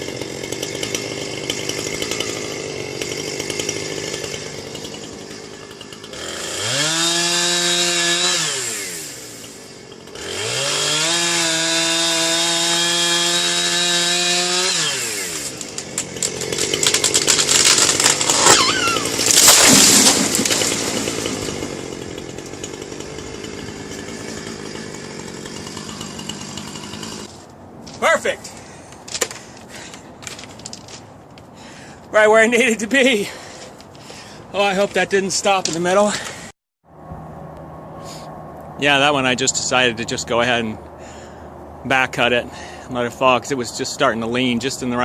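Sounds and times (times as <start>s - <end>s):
tree cracking and falling: 0.0s - 8.3s, 10.1s - 28.2s, 29.0s - 31.8s, 33.6s - 36.4s
chainsaw revving and idling: 0.0s - 27.4s, 33.1s - 36.6s.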